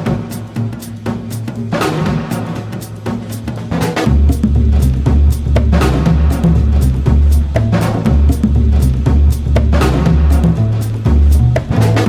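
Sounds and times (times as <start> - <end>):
music with drums: 0.0 - 12.0
deep bass: 4.1 - 12.0.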